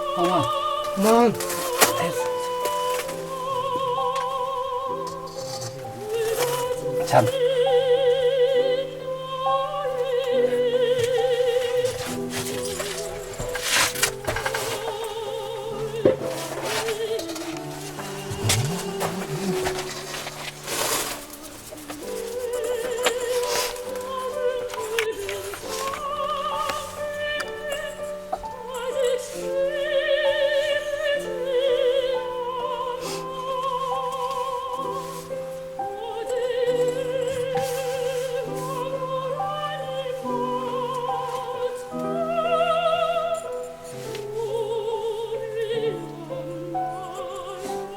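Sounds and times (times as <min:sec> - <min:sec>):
operatic singing with vibrato: 0:00.0 - 0:47.9.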